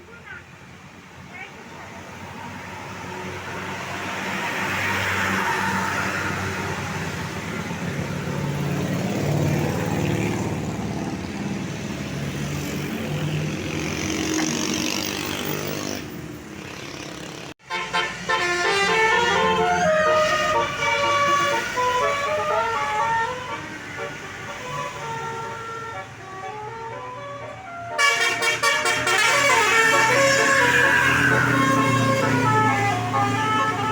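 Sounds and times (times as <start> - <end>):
bus engines: 0.0 - 33.9
road traffic: 0.0 - 33.9
musical multi-tone bus horn: 17.6 - 33.9.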